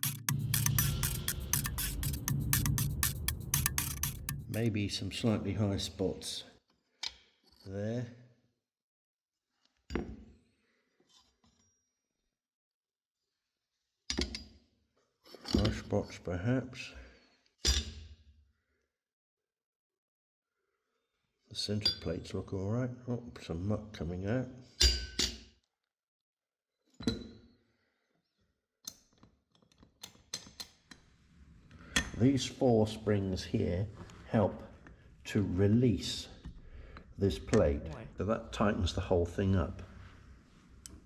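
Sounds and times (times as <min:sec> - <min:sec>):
metal plates knocking: 0:00.0 - 0:04.6.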